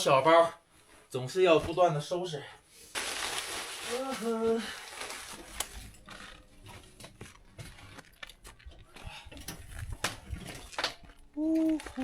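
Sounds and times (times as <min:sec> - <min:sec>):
bags rustling: 0:02.8 - 0:08.8
clicks and knocks of gear: 0:05.5 - 0:12.0.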